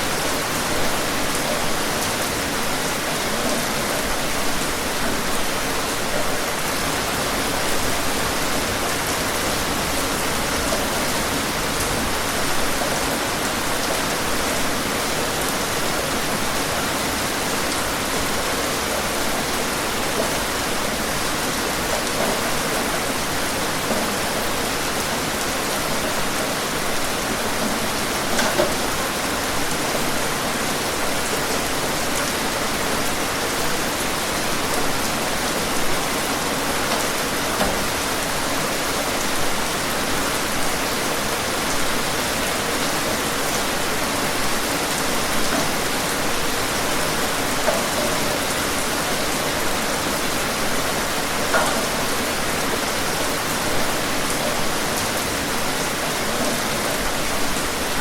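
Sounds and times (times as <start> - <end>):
rain falling: 0.0 - 58.0
raindrops tapping: 0.9 - 13.8, 17.6 - 29.2, 42.5 - 53.1.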